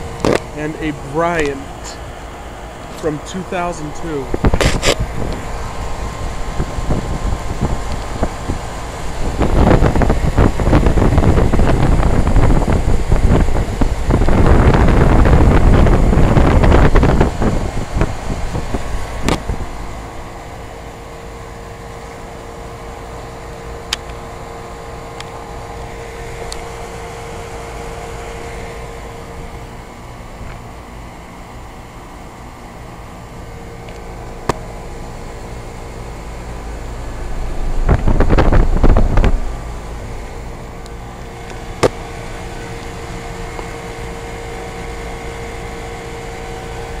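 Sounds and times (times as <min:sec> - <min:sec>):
air conditioner unit humming: 0:00.0 - 0:47.0
wind buffeting microphone: 0:04.2 - 0:20.4, 0:36.8 - 0:40.7.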